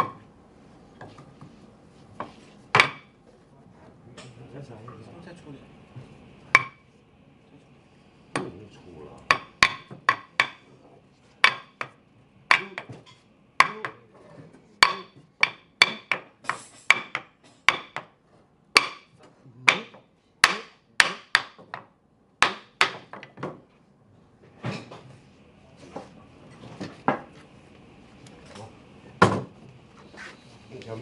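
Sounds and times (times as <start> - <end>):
hammer striking wood: 2.7 - 3.1, 6.5 - 6.8, 9.3 - 10.6, 11.4 - 13.0, 13.6 - 14.0, 14.8 - 18.1, 18.7 - 23.6.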